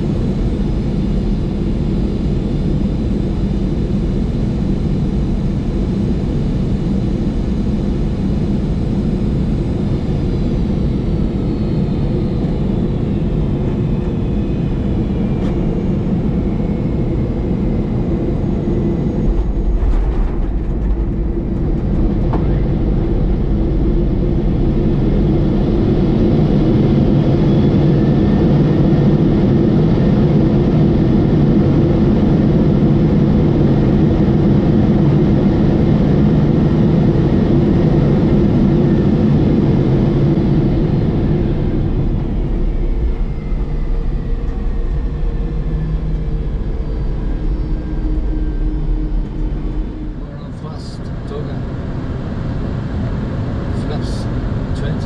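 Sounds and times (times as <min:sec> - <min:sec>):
aircraft engine and airflow rumble: 0:00.0 - 0:55.0
faint falling whine: 0:40.6 - 0:52.6.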